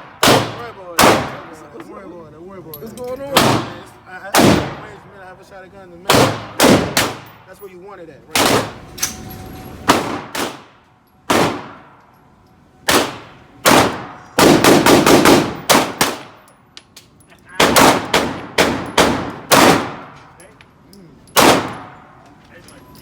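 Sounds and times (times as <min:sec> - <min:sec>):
pistol gunshots with echo: 0:00.0 - 0:01.6, 0:03.4 - 0:05.0, 0:06.1 - 0:07.5, 0:08.3 - 0:08.8, 0:09.9 - 0:12.0, 0:12.9 - 0:16.5, 0:17.6 - 0:20.2, 0:21.4 - 0:22.2.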